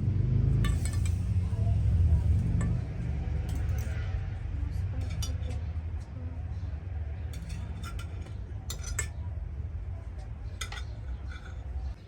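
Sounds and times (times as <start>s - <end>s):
low rumble: 0.0s - 7.0s
cutlery clinking on plates: 2.3s - 4.0s, 5.0s - 5.8s, 7.3s - 9.3s, 10.4s - 12.0s.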